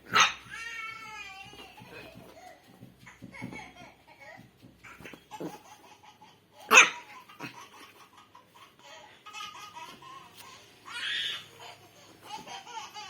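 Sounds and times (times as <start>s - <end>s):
puppy barking: 0.0s - 0.6s, 6.7s - 7.6s
faint small noises: 0.0s - 13.0s.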